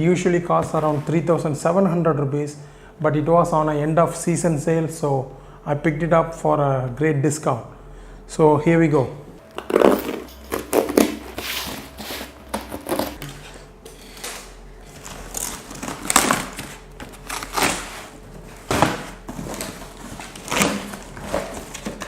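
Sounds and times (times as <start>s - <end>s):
cardboard box scraping and tearing: 10.9s - 13.2s.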